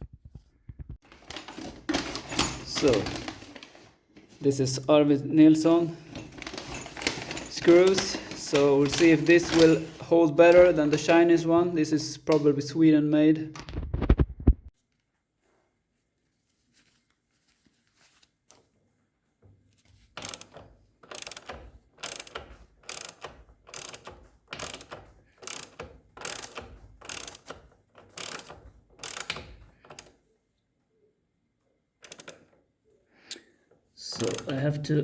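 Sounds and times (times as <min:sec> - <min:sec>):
ratchet wrench rasping: 0:20.2 - 0:29.4.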